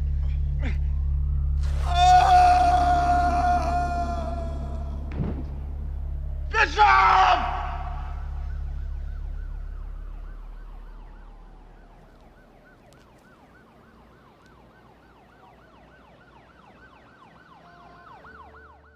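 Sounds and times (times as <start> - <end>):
deep rumble: 0.0 - 12.9
emergency siren yelping: 0.0 - 18.9.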